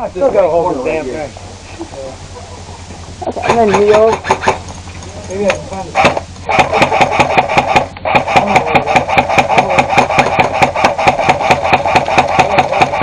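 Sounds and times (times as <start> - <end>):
airsoft gun firing full auto: 6.0 - 13.0.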